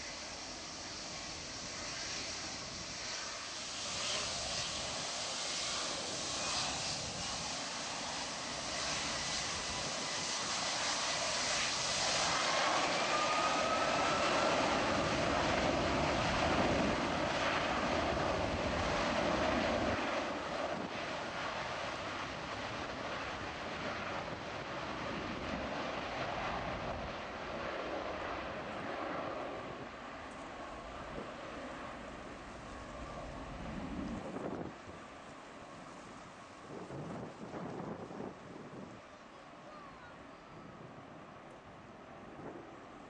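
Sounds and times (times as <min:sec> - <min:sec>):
jet engines roaring: 0:00.0 - 0:38.9
thin rising whine: 0:12.4 - 0:15.1.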